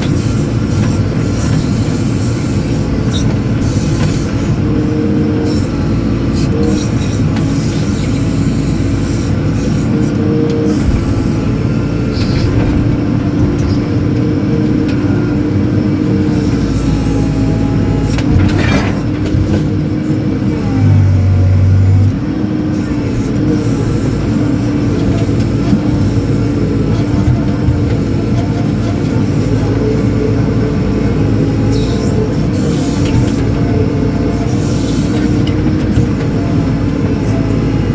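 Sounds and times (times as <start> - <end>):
diesel engine running: 0.0 - 37.9.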